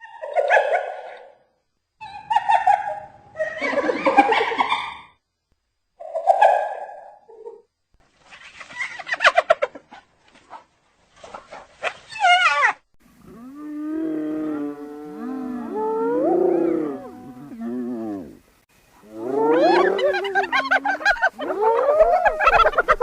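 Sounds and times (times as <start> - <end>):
hyena long swooping call: 13.3 - 18.4, 19.0 - 22.5.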